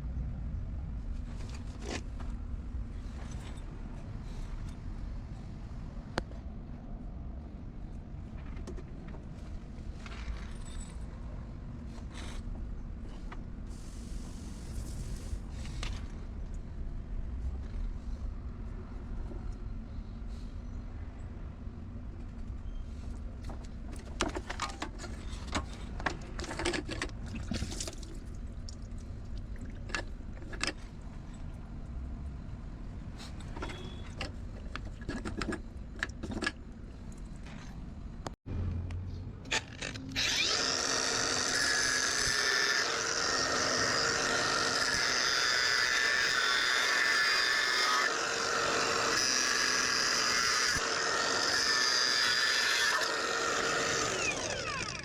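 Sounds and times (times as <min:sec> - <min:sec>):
power tool running: 0:39.8 - 0:55.0.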